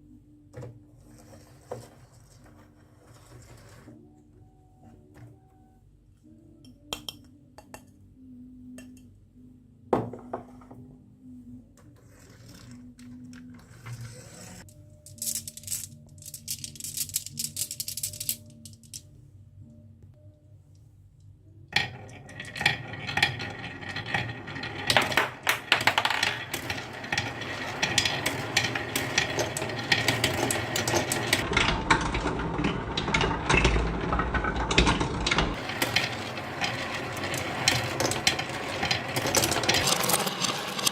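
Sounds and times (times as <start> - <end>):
marbles clattering down wooden run: 21.8 - 40.9.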